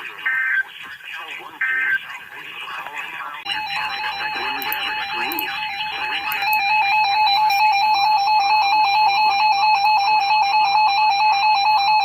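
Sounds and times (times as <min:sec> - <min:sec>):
two-tone electronic warble: 0:03.5 - 0:12.0.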